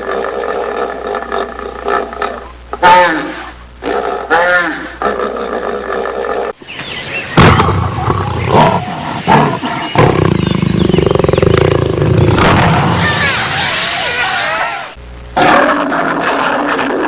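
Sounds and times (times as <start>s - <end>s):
low pulsing roar: 7.4s - 13.2s
animal cries: 12.6s - 15.6s.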